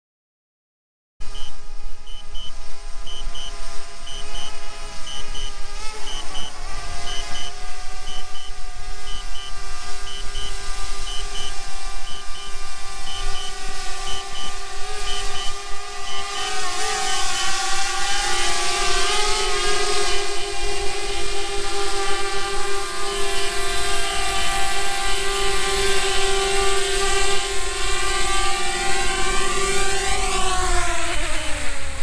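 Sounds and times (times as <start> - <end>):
drone propellers buzzing: 1.2 - 32.0
short high beeps: 1.3 - 2.5, 7.1 - 9.5, 10.1 - 17.6.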